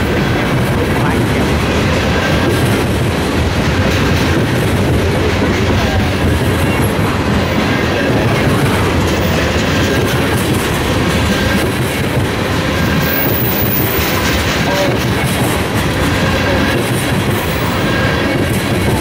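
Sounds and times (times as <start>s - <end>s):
train wheels on rails: 0.0s - 19.0s.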